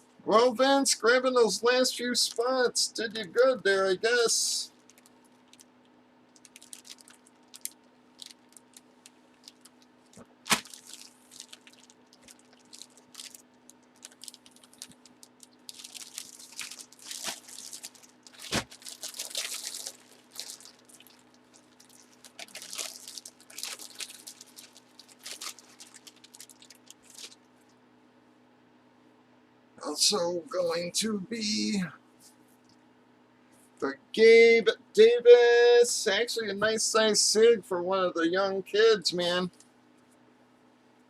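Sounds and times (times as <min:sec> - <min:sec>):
crinkly plastic rustling: 0:04.7 - 0:27.5.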